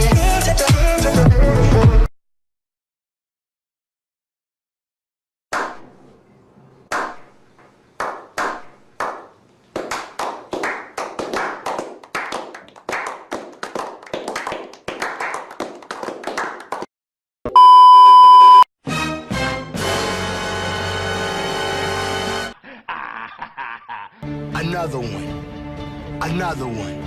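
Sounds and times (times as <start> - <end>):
hand clapping: 8.0 - 16.9
censor beep: 17.5 - 18.7.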